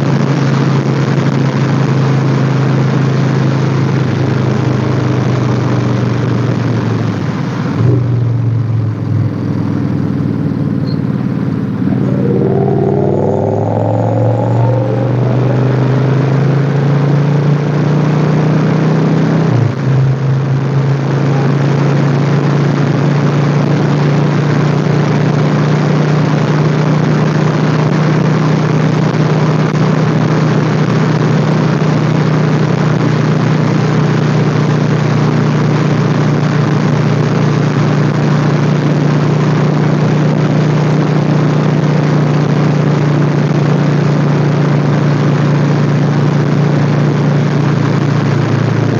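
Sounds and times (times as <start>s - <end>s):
motorcycle engine running: 5.2s - 18.7s.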